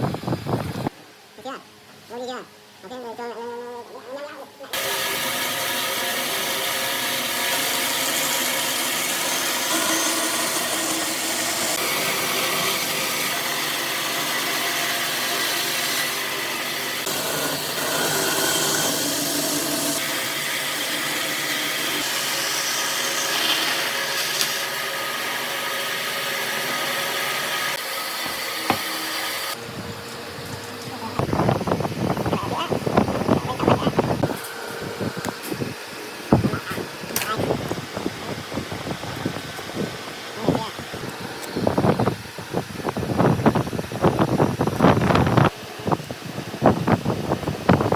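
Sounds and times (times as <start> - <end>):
power tool grinding wood: 4.8 - 29.6.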